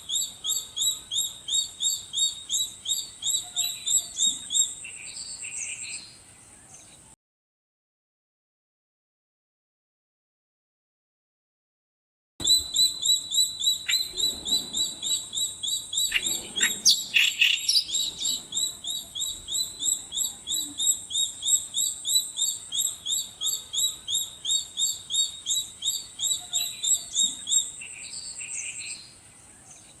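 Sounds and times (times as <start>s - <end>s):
other bird calls: 12.4s - 29.0s.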